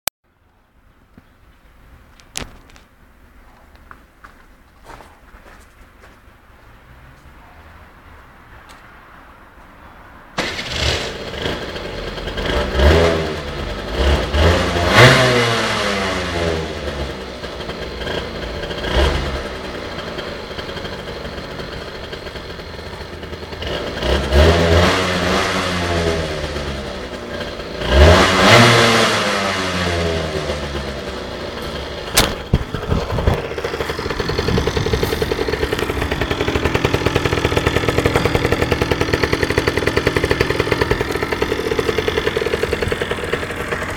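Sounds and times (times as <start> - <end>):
motorcycle engine revving: 10.4 - 43.9
sharp click: 32.2 - 32.6.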